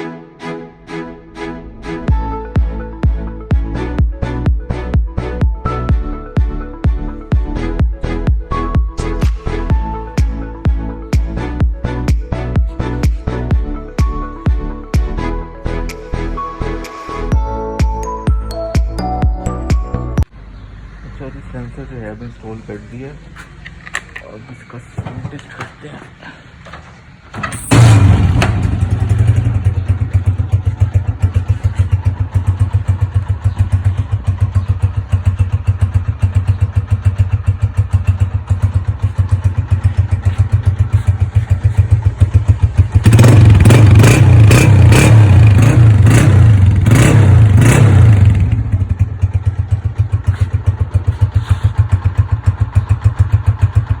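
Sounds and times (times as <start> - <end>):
motorcycle engine idling and revving: 2.1 - 15.3, 26.5 - 54.0.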